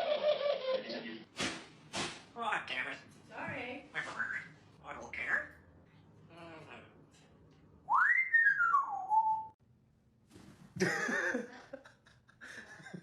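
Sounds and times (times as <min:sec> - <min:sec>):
parrot whistling: 0:07.9 - 0:09.6.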